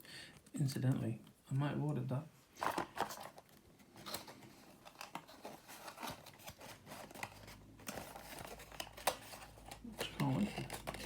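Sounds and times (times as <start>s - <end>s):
paper and card rustling: 2.6s - 11.0s.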